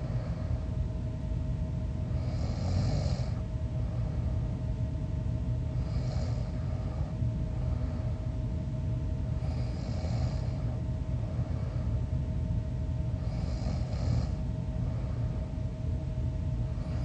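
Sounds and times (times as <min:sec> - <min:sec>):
faint steady hum: 0:00.0 - 0:17.0
steady low rumble: 0:00.0 - 0:17.0
person snoring: 0:02.2 - 0:03.4, 0:05.8 - 0:07.2, 0:09.4 - 0:10.8, 0:13.2 - 0:14.4.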